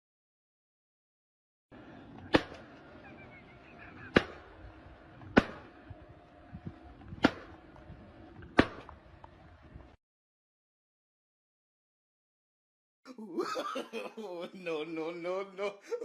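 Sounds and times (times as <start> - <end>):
steady background noise: 1.7 - 10.0
sharp impacts: 4.0 - 6.0, 7.0 - 7.8.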